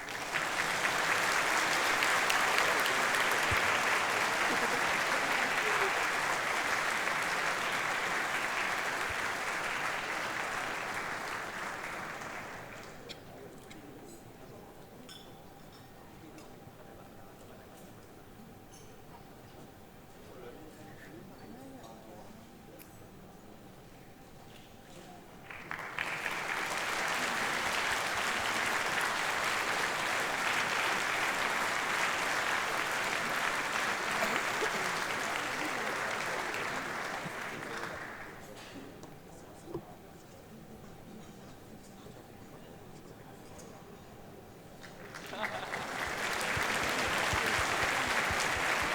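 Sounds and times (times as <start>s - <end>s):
audience applause: 0.0s - 13.1s, 25.4s - 38.5s, 44.8s - 48.9s.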